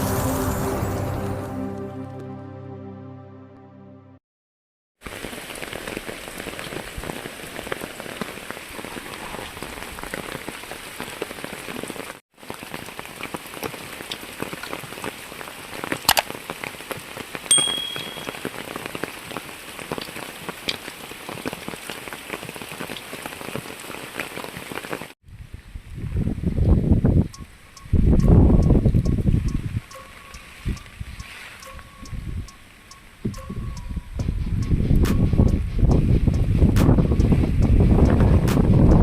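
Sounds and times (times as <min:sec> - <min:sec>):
brief high chirp: 0:00.0 - 0:04.0, 0:17.5 - 0:18.6
rain pattering: 0:05.0 - 0:17.5, 0:18.4 - 0:26.0.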